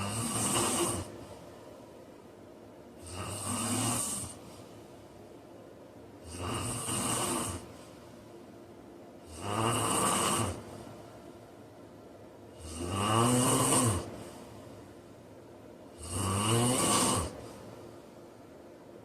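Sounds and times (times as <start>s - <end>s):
man snoring: 0.0s - 1.2s, 3.0s - 4.4s, 6.2s - 7.7s, 9.2s - 10.6s, 12.5s - 14.4s, 15.9s - 17.4s.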